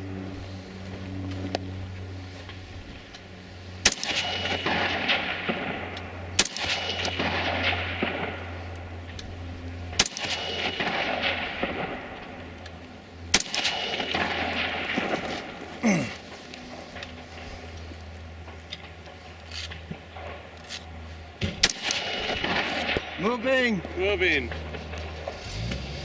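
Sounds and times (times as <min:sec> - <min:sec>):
steady low rumble: 0:00.0 - 0:26.0
rifle shots echoing: 0:03.8 - 0:08.6, 0:09.9 - 0:12.5, 0:13.3 - 0:15.7, 0:21.5 - 0:25.4.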